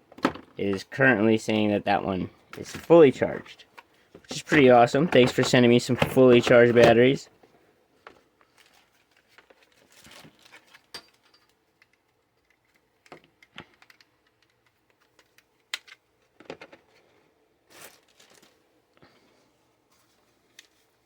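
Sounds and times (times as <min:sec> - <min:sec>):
rustling: 0:08.0 - 0:10.9, 0:16.7 - 0:21.0
plastic clicks: 0:11.1 - 0:16.8.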